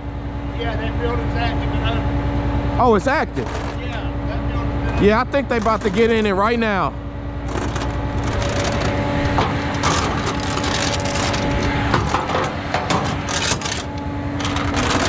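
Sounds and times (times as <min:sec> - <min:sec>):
steady hum: 0:00.0 - 0:15.0
knocks clicks and rattles: 0:03.4 - 0:04.0, 0:04.9 - 0:06.3, 0:07.5 - 0:15.0.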